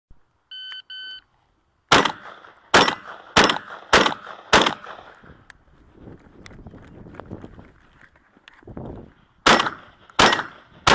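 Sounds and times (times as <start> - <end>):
shot timer beep: 0.5 - 1.2
shotgun shots: 1.9 - 5.2, 9.4 - 10.9.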